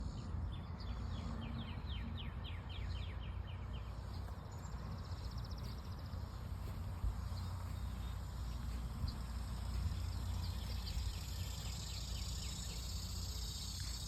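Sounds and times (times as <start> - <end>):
songbird singing: 0.0 - 14.0
steady low rumble: 0.0 - 14.0
cicada buzzing: 9.1 - 14.0.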